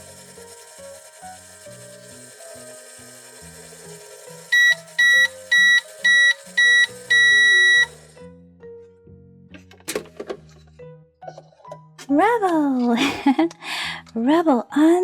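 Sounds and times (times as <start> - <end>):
microwave beeps: 4.4 - 8.2.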